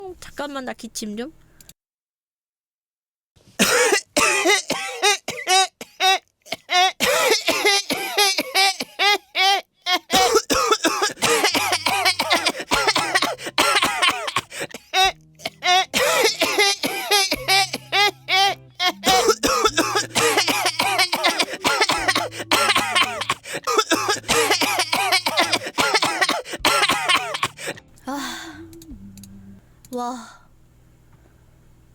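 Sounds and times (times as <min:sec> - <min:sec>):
person coughing hard: 0:03.6 - 0:27.8.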